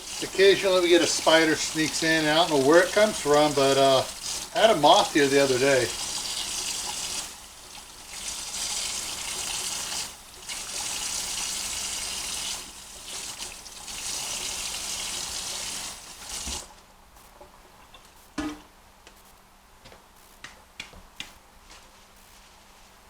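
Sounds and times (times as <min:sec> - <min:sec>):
tap water running over lettuce: 0:00.0 - 0:16.7.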